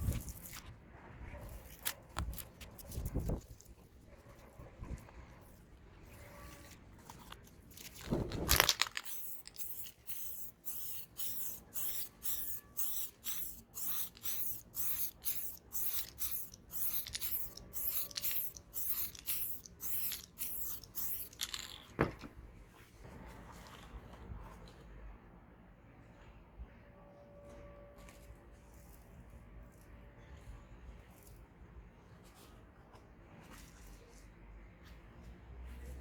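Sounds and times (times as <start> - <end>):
spray paint can hissing: 7.8 - 21.9.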